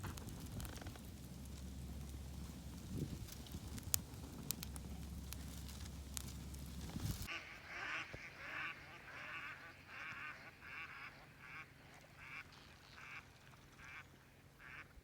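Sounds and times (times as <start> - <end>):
mallard quacking: 7.3 - 12.4.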